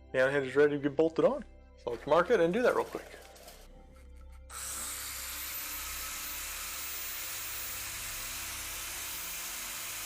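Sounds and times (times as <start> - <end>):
power cutting tool hissing: 4.5 - 10.0.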